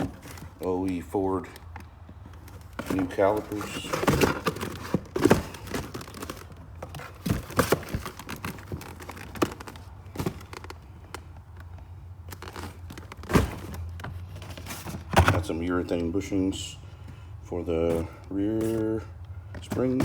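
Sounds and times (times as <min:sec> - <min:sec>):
packaging crinkling: 0:02.4 - 0:11.0.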